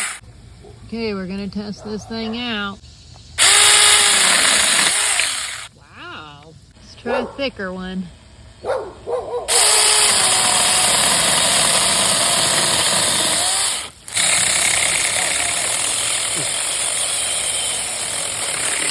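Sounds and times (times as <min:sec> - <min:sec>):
chainsaw cutting wood: 0:00.0 - 0:00.2, 0:03.4 - 0:05.7, 0:09.5 - 0:18.9.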